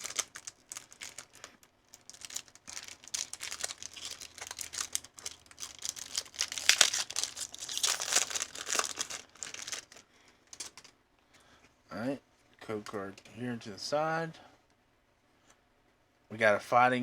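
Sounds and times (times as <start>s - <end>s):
foil wrapper crinkling and tearing: 0.0s - 10.9s.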